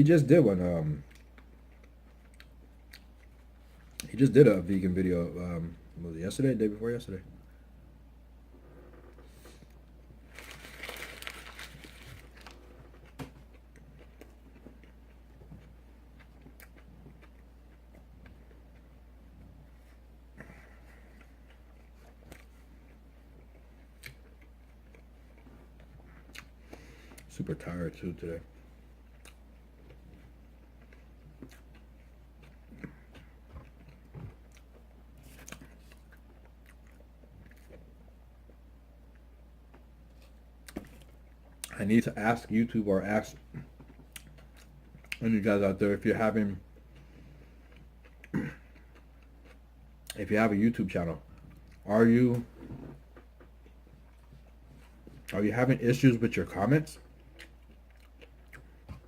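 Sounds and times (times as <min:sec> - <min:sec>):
steady low hum: 0:00.0 - 0:59.0
person chewing food: 0:01.0 - 0:04.1, 0:09.4 - 0:27.3, 0:28.6 - 0:41.8, 0:43.4 - 0:45.2, 0:46.7 - 0:50.2, 0:52.7 - 0:55.4, 0:57.0 - 0:59.0
crinkling crunching food: 0:10.2 - 0:15.0.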